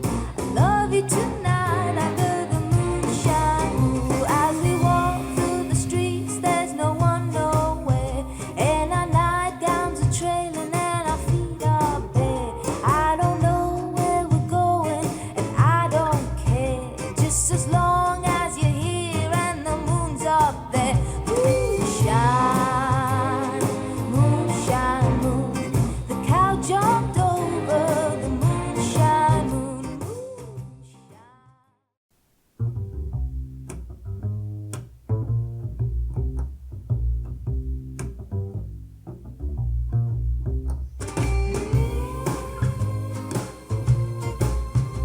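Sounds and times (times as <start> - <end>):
woman singing over guitar: 0.0 - 31.5, 41.4 - 45.0.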